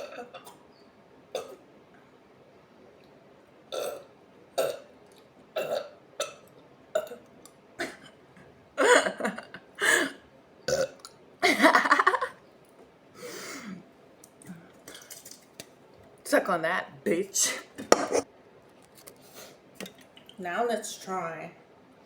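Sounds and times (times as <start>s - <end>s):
woman burping: 0.0s - 0.5s, 1.4s - 1.6s, 3.7s - 4.0s, 4.6s - 4.8s, 5.6s - 6.4s, 7.8s - 8.2s, 8.8s - 11.8s.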